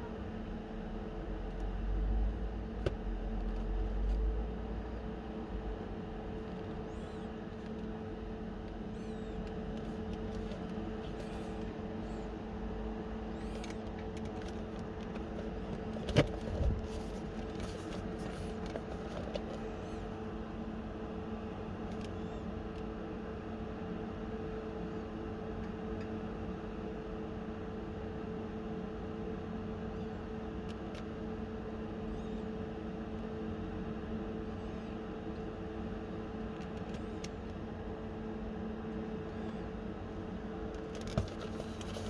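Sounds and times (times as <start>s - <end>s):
handling clicks and rustles: 13.4s - 20.0s, 40.7s - 42.0s.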